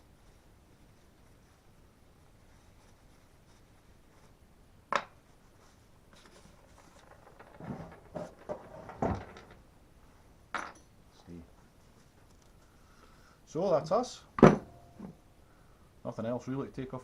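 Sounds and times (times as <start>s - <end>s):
knocks and clatter of tools: 6.2s - 9.7s, 10.6s - 10.9s.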